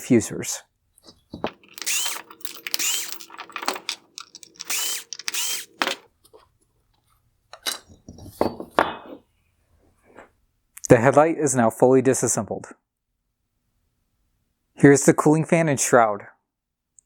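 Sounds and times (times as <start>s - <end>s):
clicks and knocks: 1.3s - 6.1s
power screwdriver motor: 1.5s - 6.0s.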